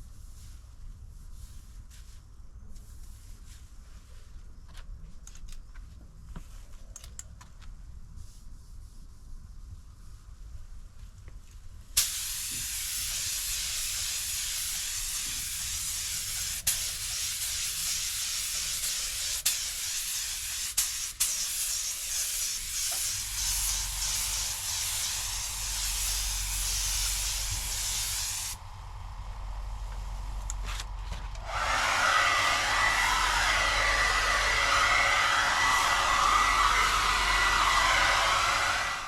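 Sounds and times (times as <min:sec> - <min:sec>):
compressed air hissing: 0:12.0 - 0:28.8, 0:31.4 - 0:39.0
low hum: 0:23.3 - 0:39.0.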